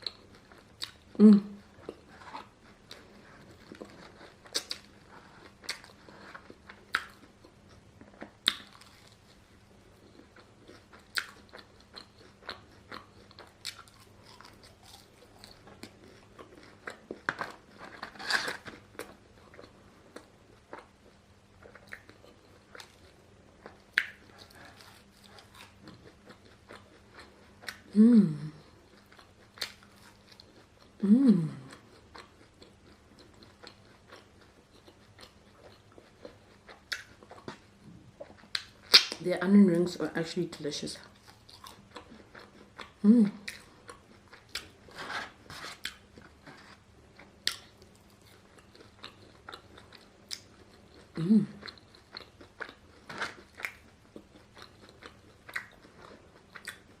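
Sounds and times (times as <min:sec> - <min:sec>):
chewing crispy fried food: 0:00.0 - 0:57.0
person humming falling pitch: 0:28.0 - 0:28.5, 0:31.0 - 0:31.7.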